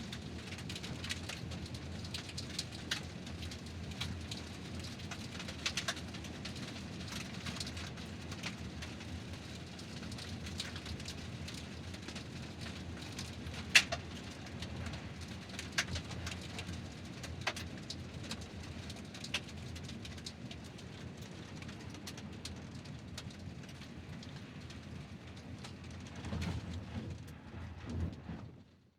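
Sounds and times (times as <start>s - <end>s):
car tyres rolling over gravel: 0.2s - 28.8s.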